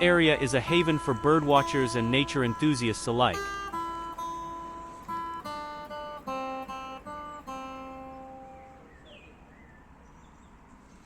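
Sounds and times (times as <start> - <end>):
plucked acoustic guitar: 0.0 - 8.8.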